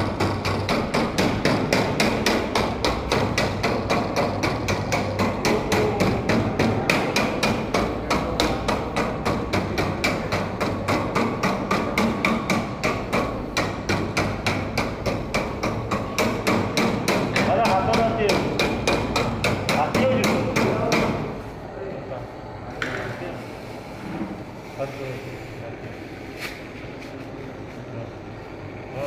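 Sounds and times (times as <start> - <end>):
rapid hammer-like knocks: 0.0 - 21.4.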